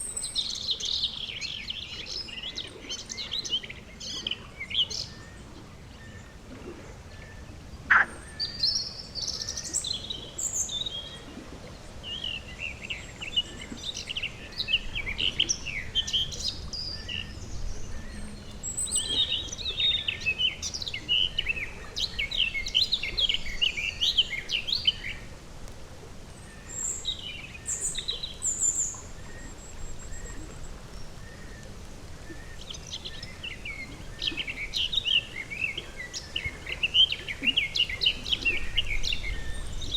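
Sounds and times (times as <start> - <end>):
birds singing and chirping: 7.3 - 25.3, 26.4 - 39.9.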